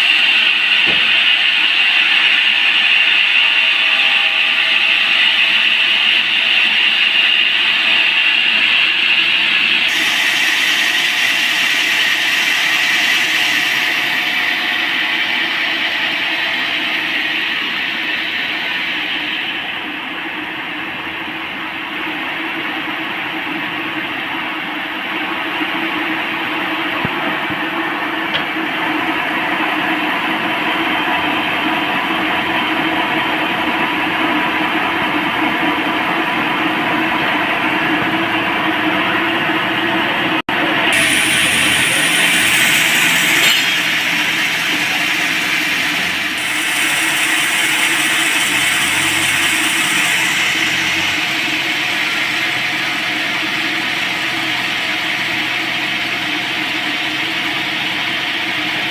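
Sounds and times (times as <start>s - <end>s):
band saw cutting log: 9.6s - 19.5s, 40.9s - 53.0s.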